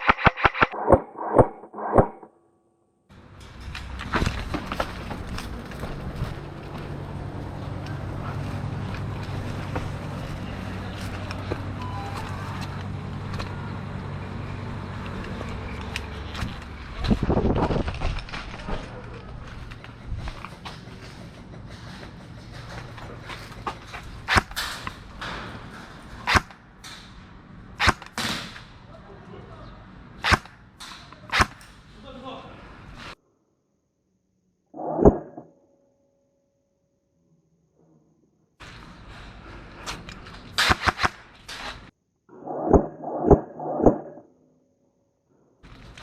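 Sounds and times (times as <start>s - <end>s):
rustling background: 3.2s - 14.0s, 14.9s - 26.7s
airsoft gun shots: 27.8s - 28.7s, 30.2s - 30.6s.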